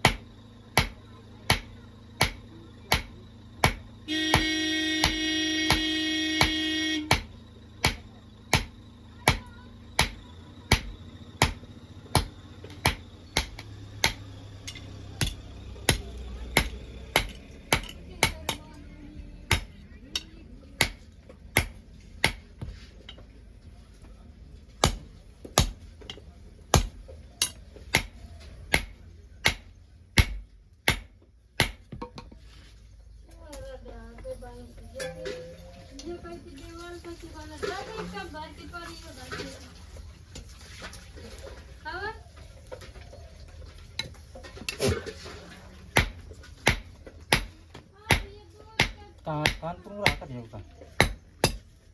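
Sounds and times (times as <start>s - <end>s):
hammer striking metal: 0.0s - 18.7s, 19.4s - 22.5s, 24.8s - 31.9s, 46.0s - 50.3s, 51.0s - 51.7s
loud steady multi-pitch tone: 1.8s - 13.6s.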